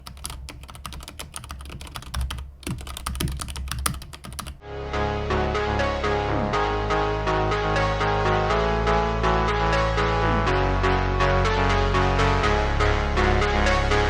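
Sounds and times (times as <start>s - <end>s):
mechanical keyboard typing: 0.0s - 4.6s
electronic music with bass line: 4.6s - 14.0s.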